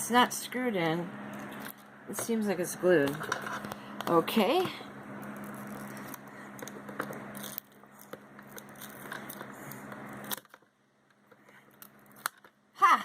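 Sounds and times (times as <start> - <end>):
steady low hum: 0.0 - 13.0
plastic parts clicking and scraping: 5.3 - 12.6.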